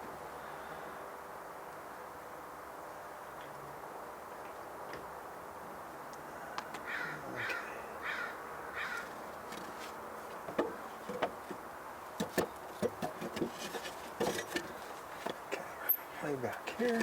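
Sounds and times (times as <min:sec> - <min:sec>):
bird harsh calls: 0:06.8 - 0:09.2.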